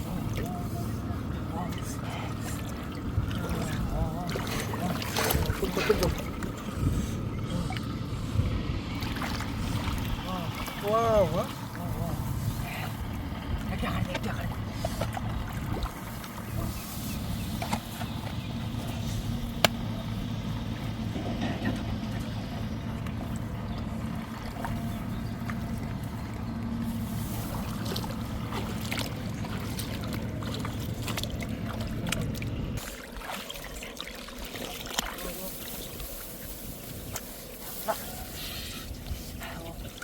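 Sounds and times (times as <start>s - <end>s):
small engine running: 0.0s - 32.8s
water splashing and trickling: 0.0s - 40.0s.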